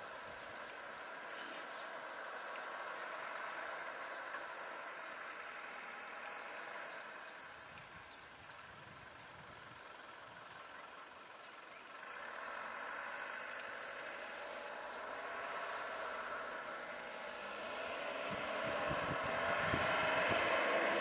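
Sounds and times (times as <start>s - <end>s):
faint vehicle engine rumble: 0.0s - 21.0s
insects chirring: 0.0s - 21.0s.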